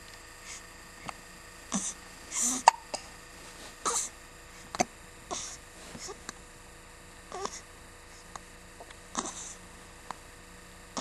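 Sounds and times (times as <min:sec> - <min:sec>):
person hiccuping: 0:01.7 - 0:03.1, 0:03.8 - 0:04.1.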